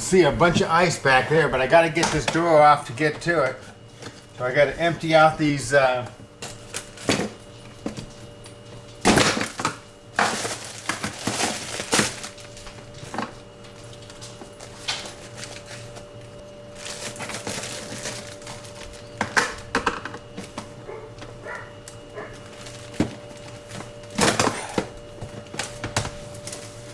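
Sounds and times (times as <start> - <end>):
freezer hum: 0.0 - 26.9
frozen packages clattering: 0.0 - 26.9
plastic bags crinkling: 8.3 - 26.9.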